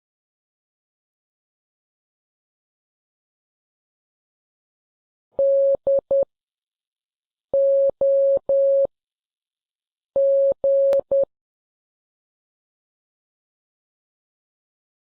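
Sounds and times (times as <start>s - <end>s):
morse code beeps: 7.6s - 8.9s, 10.2s - 11.3s.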